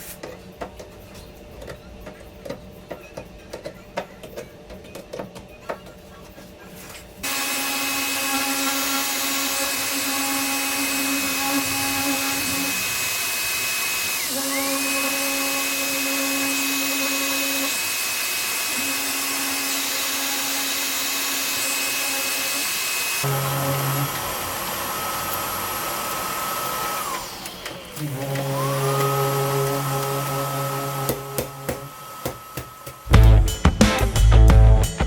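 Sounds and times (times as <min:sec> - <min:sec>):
electric power tool whining: 0:07.2 - 0:33.4.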